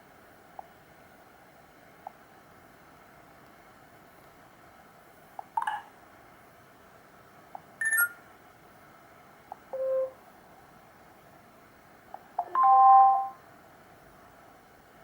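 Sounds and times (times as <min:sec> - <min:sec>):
phone ringtone previews: 0:12.4 - 0:13.4.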